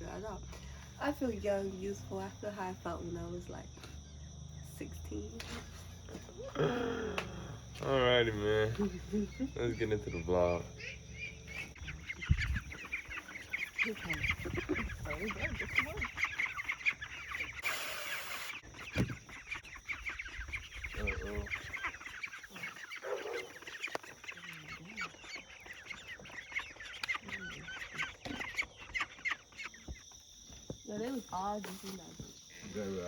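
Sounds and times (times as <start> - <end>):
chickens clucking: 5.4 - 33.0
burst of hiss-like noise: 17.6 - 18.6.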